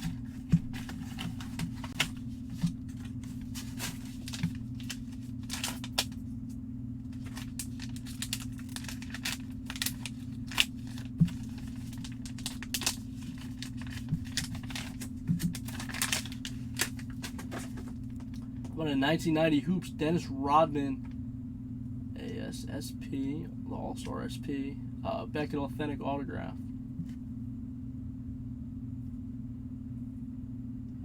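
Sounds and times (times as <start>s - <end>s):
packaging being opened by hand: 0.0s - 6.2s, 7.1s - 18.4s
rustling and tearing: 0.0s - 18.4s
steady low hum: 0.0s - 31.0s.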